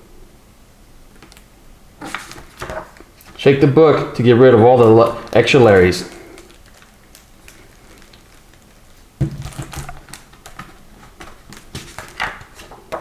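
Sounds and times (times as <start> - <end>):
book pages rustling and flapping: 1.1 - 13.0
book cover knocking: 9.2 - 9.9.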